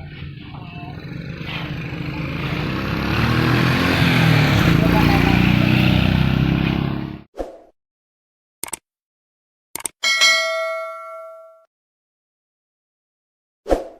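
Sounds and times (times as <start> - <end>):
motorcycle engine running: 0.0 - 7.2
short clicks: 8.6 - 8.8, 9.7 - 10.0
bell-like ding: 10.0 - 11.7.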